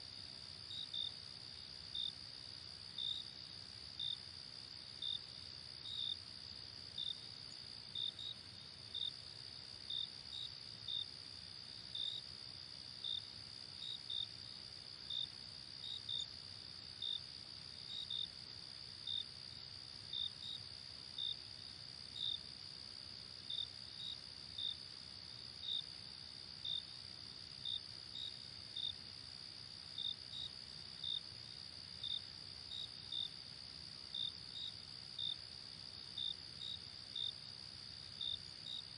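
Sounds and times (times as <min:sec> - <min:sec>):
cricket chirps: 0:00.0 - 0:38.9.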